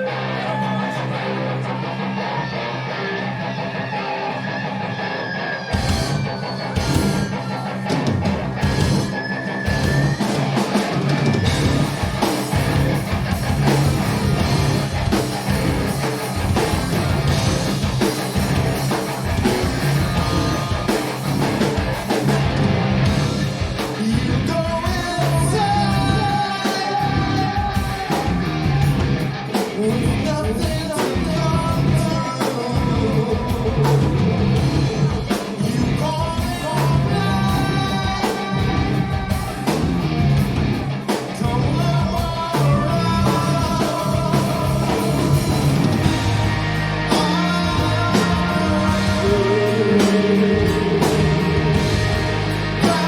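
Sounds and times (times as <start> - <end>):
rock band playing: 0.0 - 53.0
person singing: 23.8 - 28.9, 29.6 - 39.9, 41.4 - 46.4, 47.1 - 53.0.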